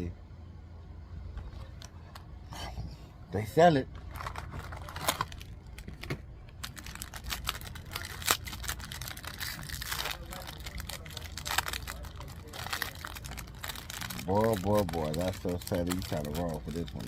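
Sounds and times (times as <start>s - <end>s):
snack package crinkling: 4.0s - 17.0s.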